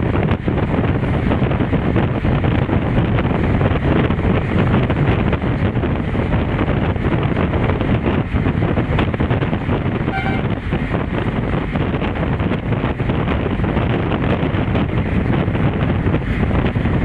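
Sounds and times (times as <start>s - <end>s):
wind buffeting microphone: 0.0s - 17.0s
whistle-like tone: 10.1s - 10.5s.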